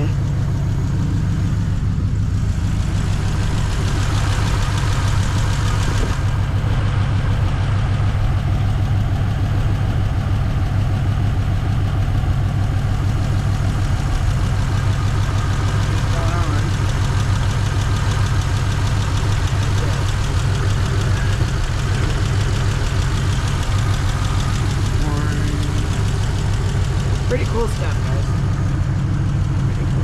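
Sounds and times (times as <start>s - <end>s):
car engine idling: 0.0s - 30.0s.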